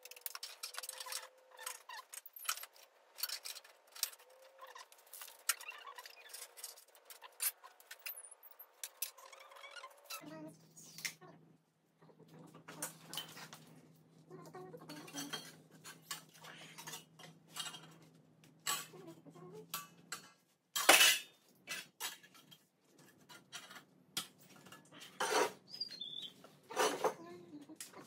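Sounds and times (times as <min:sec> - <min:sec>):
metal tools clinking and knocking: 0:00.0 - 0:10.2, 0:14.9 - 0:19.0, 0:19.7 - 0:25.6.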